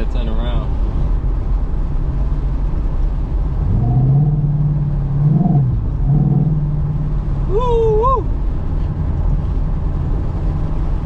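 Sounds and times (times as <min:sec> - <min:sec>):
car exhaust rumble: 0:00.0 - 0:11.0
short high voice-like cry: 0:07.5 - 0:08.3.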